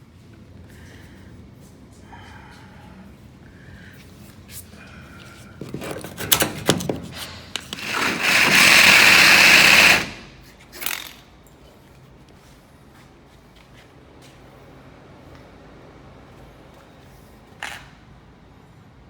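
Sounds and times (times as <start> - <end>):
power tool running: 7.7 - 11.0.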